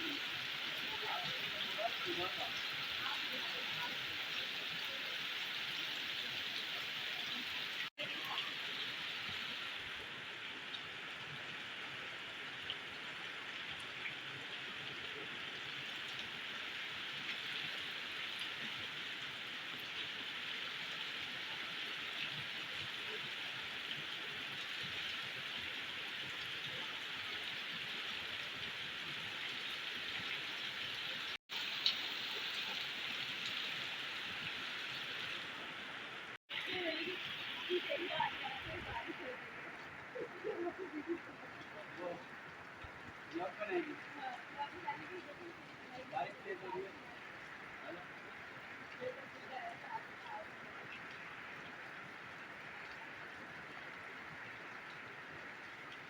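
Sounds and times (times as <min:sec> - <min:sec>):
heavy rain falling: 0:00.0 - 0:56.0
rain drop ticks: 0:31.5 - 0:35.4.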